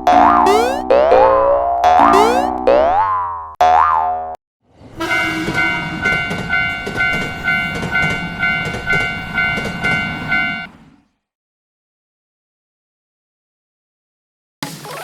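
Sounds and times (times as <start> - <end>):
passing train rumble: 4.7 - 11.1
level-crossing warning bell: 5.0 - 10.7.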